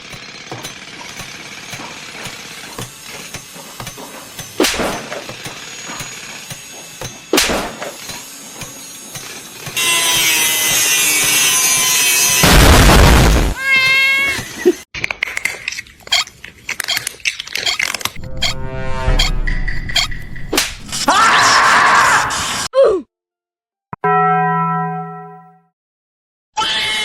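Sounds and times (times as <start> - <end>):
sharp knocks: 0.0 - 11.5
power tool running: 0.0 - 13.6
loud crash: 12.4 - 13.6.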